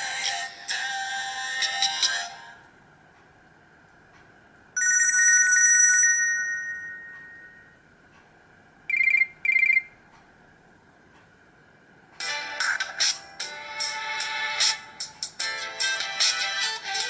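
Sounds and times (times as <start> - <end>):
warbling two-note phone ring: 4.8 - 7.8
short electronic beeps: 8.9 - 9.9.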